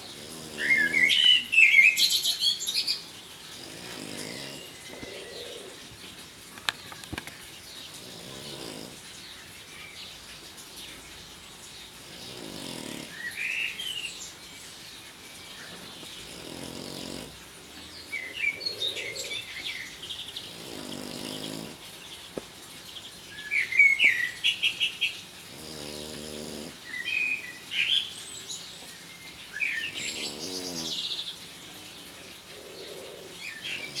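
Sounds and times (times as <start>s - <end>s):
pet snoring: 0.0s - 1.4s, 3.4s - 5.9s, 7.9s - 9.1s, 12.0s - 13.5s, 15.8s - 19.7s, 20.3s - 21.9s, 25.4s - 26.8s, 29.8s - 31.1s, 32.5s - 34.0s
birds chirping: 0.0s - 34.0s.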